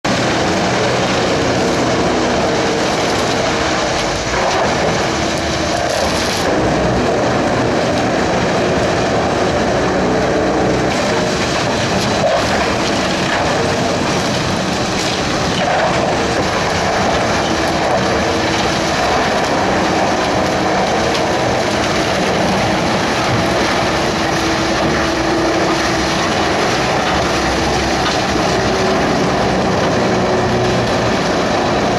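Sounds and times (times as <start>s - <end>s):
wood chipper running: 0.0s - 31.9s.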